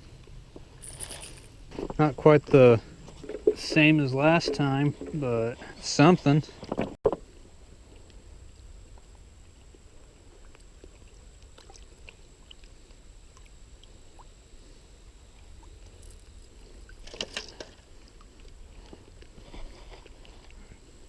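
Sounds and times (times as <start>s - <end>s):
noisy rustle: 0.0s - 4.1s.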